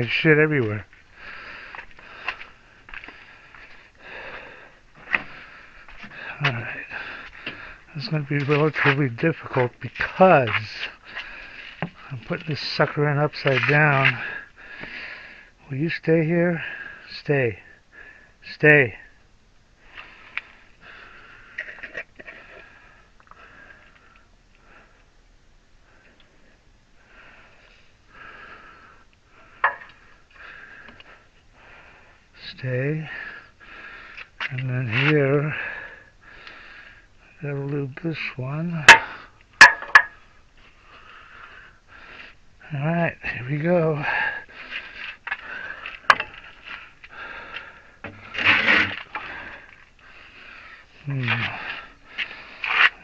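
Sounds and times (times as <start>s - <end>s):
small knocks: 38.9s - 40.2s
rushing metal scrape: 48.2s - 49.2s.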